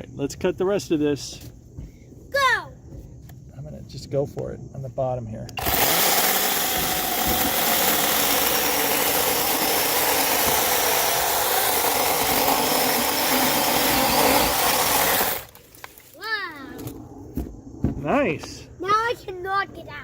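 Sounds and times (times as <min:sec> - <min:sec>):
mini chainsaw cutting wood: 0:05.6 - 0:16.2.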